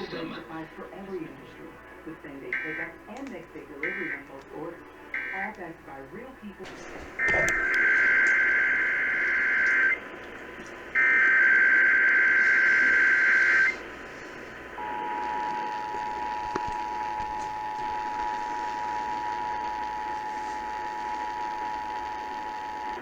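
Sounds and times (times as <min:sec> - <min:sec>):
two-tone attention signal: 0:02.5 - 0:03.0, 0:03.8 - 0:04.3, 0:05.2 - 0:05.6, 0:07.2 - 0:10.0, 0:11.0 - 0:13.8.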